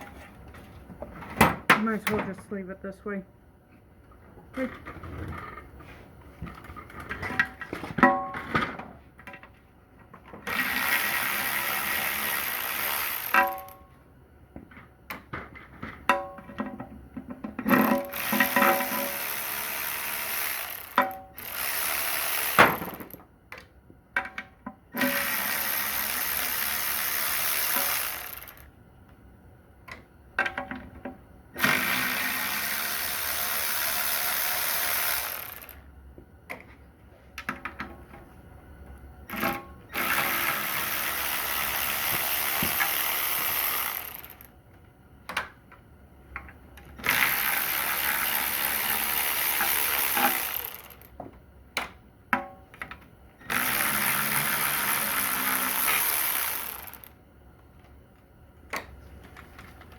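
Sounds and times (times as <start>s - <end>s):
power ratchet running: 10.5s - 13.7s, 17.7s - 23.2s, 25.0s - 28.7s, 31.6s - 35.8s, 39.3s - 44.5s, 47.0s - 51.1s, 53.5s - 57.1s.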